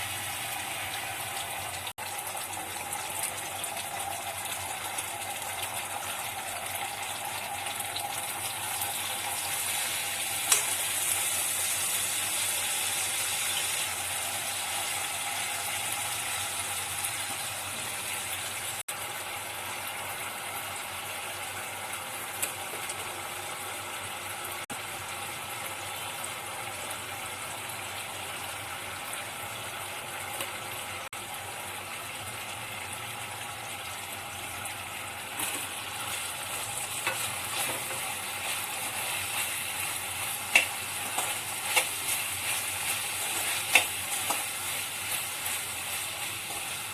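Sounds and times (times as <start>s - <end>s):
food sizzling in hot oil: 0.0s - 46.9s
utensil clicking against pan: 37.0s - 38.6s, 40.4s - 42.3s, 42.9s - 45.2s.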